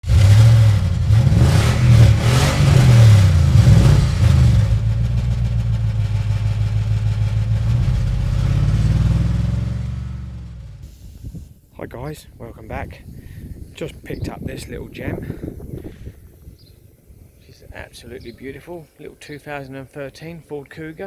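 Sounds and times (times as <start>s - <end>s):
car engine revving: 0.0s - 11.2s.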